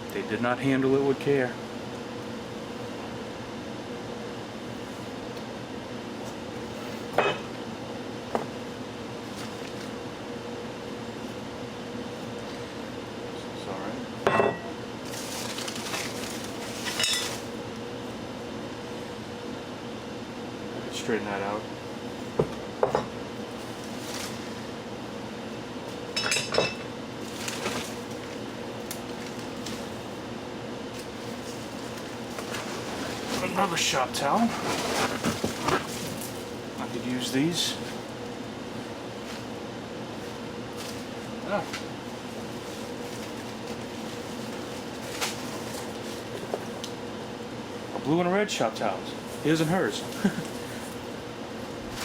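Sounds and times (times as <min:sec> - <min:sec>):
steady background hum: 0:00.0 - 0:52.0
packing rustling: 0:15.1 - 0:17.5, 0:34.3 - 0:36.5.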